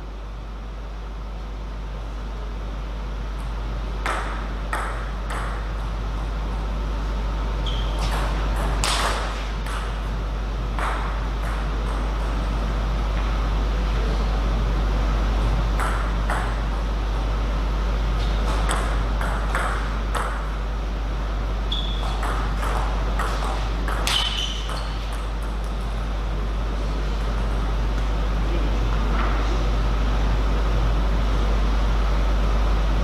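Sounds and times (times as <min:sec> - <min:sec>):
steady low hum: 0:00.0 - 0:33.0
brief high squeaks: 0:07.6 - 0:08.1, 0:21.7 - 0:22.2, 0:24.1 - 0:25.0.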